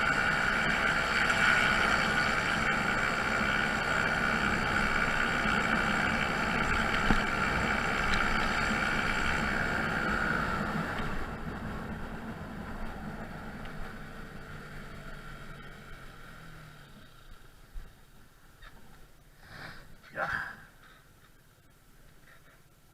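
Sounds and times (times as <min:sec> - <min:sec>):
scooter engine running: 0:00.0 - 0:17.7
riding noise: 0:00.0 - 0:20.2.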